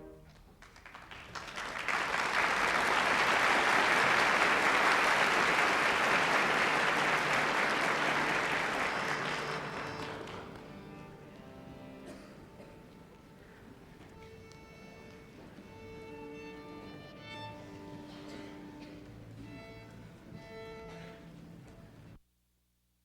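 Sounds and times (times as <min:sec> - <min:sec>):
audience applauding: 0:00.2 - 0:10.8.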